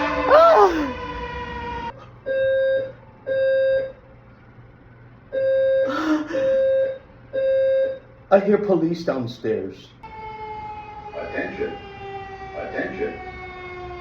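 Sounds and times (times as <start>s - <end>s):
fire alarm horn buzzing: 0.0s - 3.9s, 10.0s - 14.0s.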